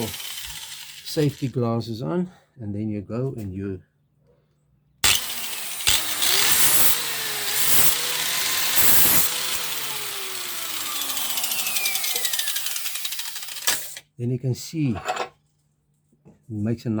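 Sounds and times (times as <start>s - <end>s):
angle grinder running: 0.0s - 1.6s, 5.0s - 14.0s
grinder winding down: 0.0s - 1.6s, 5.0s - 14.0s
grinding against metal blade: 0.0s - 1.6s, 5.0s - 14.0s.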